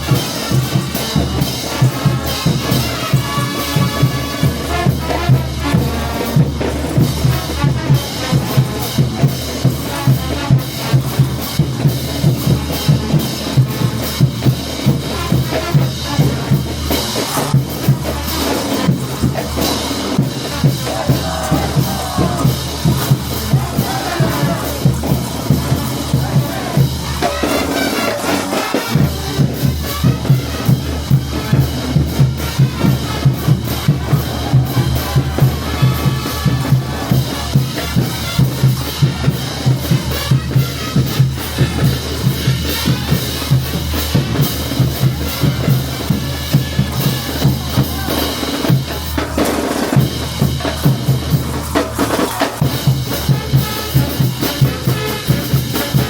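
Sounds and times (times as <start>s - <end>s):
bass drum: 0.0s - 27.8s, 28.9s - 56.0s
snare drum with rim shots: 14.8s - 56.0s.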